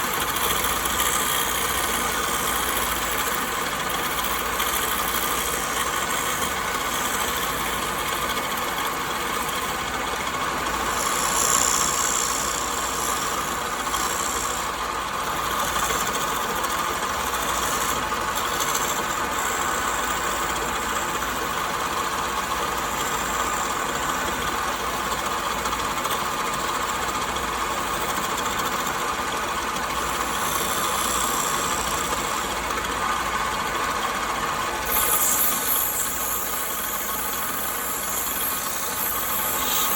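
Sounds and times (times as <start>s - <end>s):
electric power tool running: 0.0s - 39.9s.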